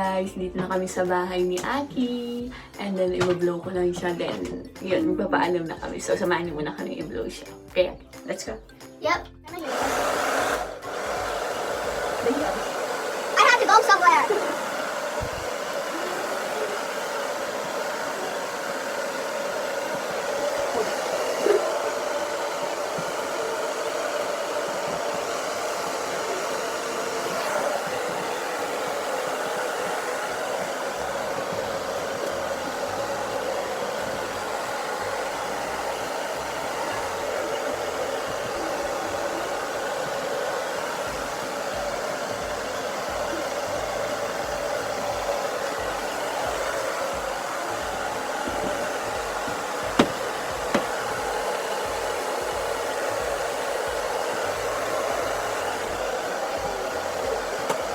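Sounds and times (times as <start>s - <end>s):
hair dryer running: 0.0s - 7.0s, 9.5s - 57.9s.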